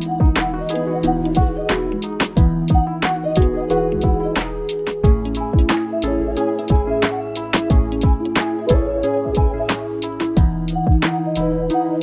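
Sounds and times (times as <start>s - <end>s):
deep kick drums: 0.0s - 0.5s, 1.4s - 1.7s, 2.4s - 4.4s, 5.0s - 5.7s, 7.7s - 9.7s, 10.4s - 11.0s
held bass and melody notes: 0.0s - 12.0s.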